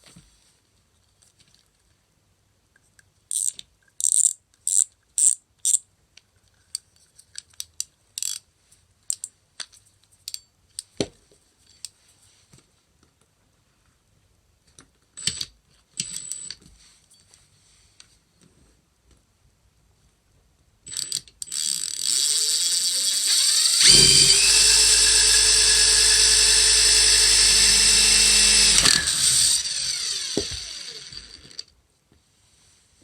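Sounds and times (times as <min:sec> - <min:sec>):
fishing reel mechanical clicks: 0:08.2 - 0:08.4, 0:20.9 - 0:31.6.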